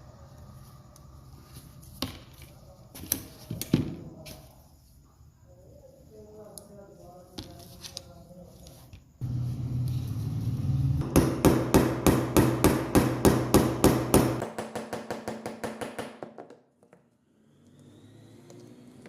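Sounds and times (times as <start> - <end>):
steady low hum: 9.2 - 14.5
rapid hammer blows: 11.0 - 16.4.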